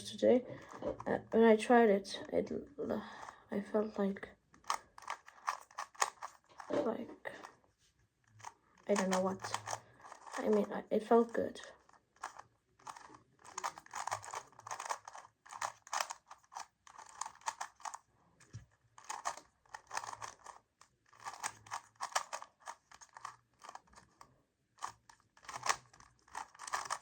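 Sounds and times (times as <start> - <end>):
puzzle cube plastic clicking: 4.5 - 6.8, 8.2 - 27.0.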